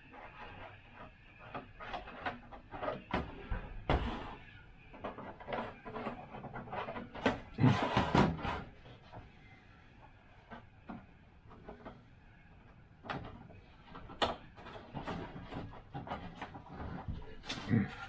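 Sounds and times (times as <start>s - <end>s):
plastic parts scraping rattle: 0.1s - 8.8s, 13.1s - 18.0s
plastic parts clicking and knocking: 10.4s - 18.0s.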